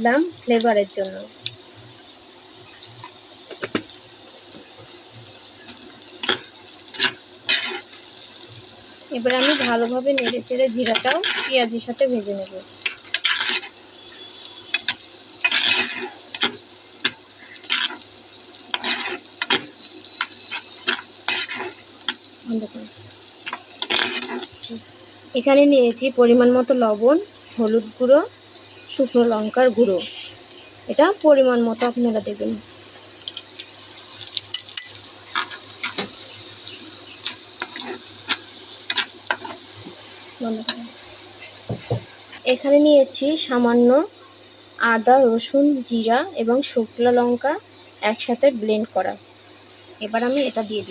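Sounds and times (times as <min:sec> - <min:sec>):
oil sizzling: 0:00.0 - 0:50.9
spatula scraping a pan: 0:04.5 - 0:24.6, 0:34.0 - 0:42.6.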